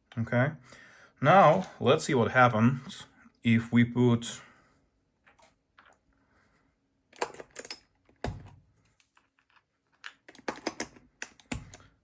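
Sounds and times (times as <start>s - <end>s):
keyboard keycaps clicking: 10.1s - 11.9s.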